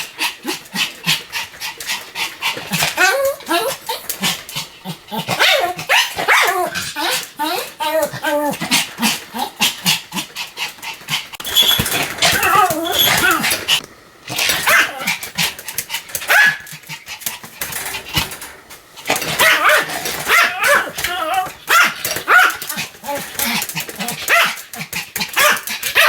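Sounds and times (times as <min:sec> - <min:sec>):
small dog barking sharply: 0:16.3 - 0:16.7.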